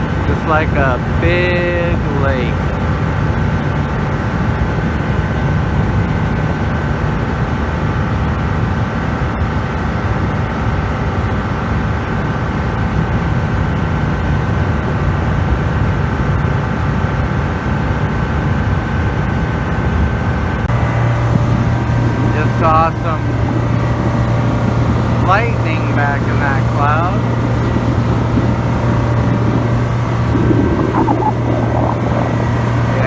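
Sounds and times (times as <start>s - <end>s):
motorboat engine drone: 0.0s - 33.0s
wind noise: 18.5s - 33.0s
rushing water: 20.8s - 33.0s.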